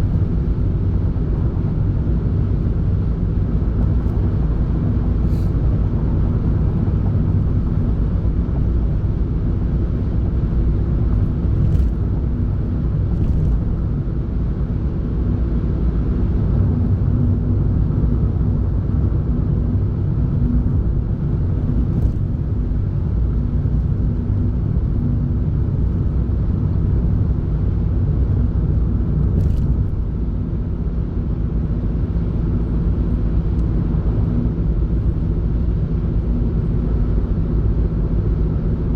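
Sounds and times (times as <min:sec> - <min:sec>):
car engine and tyres rumbling: 0:00.0 - 0:38.9.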